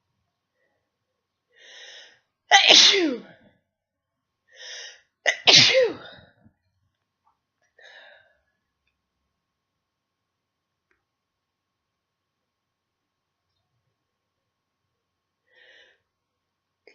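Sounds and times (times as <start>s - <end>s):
person sneezing: 2.5s - 3.3s, 5.3s - 6.2s
faint short breath: 7.8s - 8.5s, 15.5s - 16.1s
quick breath in: 15.5s - 16.0s.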